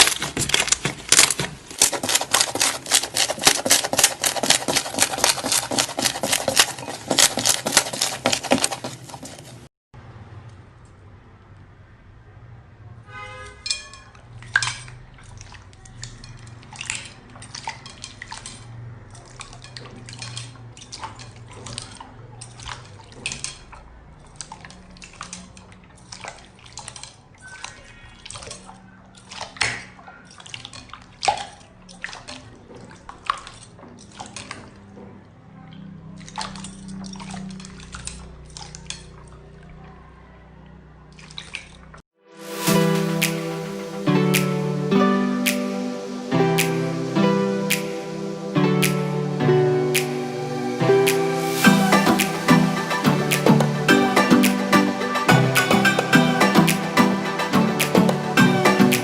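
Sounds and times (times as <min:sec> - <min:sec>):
slime squelching with wet pops: 0:00.0 - 0:09.7, 0:14.3 - 0:35.0, 0:35.6 - 0:39.4.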